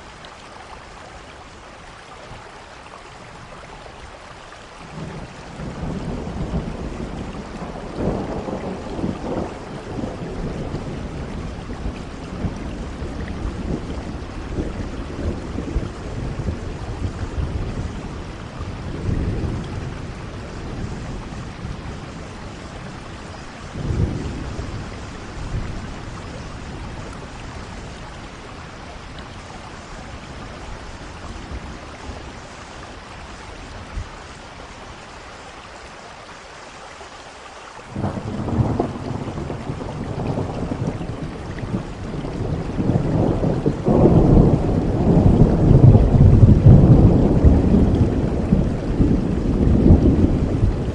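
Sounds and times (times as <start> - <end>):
steady rain: 0.0 - 50.9
thunder rumbling: 4.9 - 35.0, 37.9 - 50.9
thunder crack: 41.8 - 50.9.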